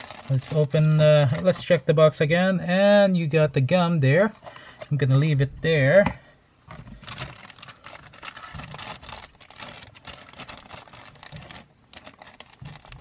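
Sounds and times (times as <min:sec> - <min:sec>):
packaging clicks and crinkles: 0:00.0 - 0:01.4, 0:06.7 - 0:13.0.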